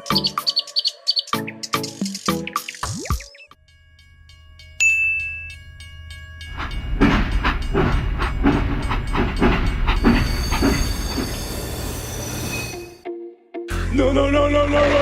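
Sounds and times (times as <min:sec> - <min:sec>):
machine clattering: 0:06.6 - 0:11.4.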